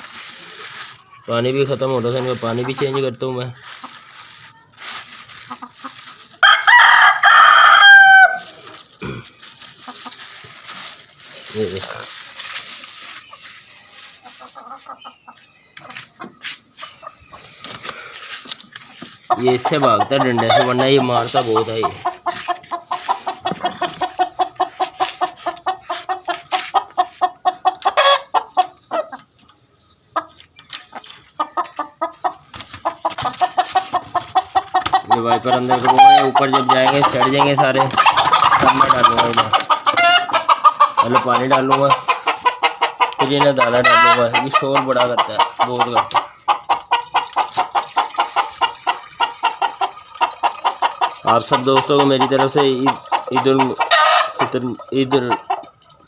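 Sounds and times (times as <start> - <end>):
chickens clucking: 0.0 - 56.0
chicken squawk: 3.6 - 8.7, 19.3 - 29.2, 32.0 - 51.2, 52.8 - 54.4
rooster crowing: 6.4 - 8.5.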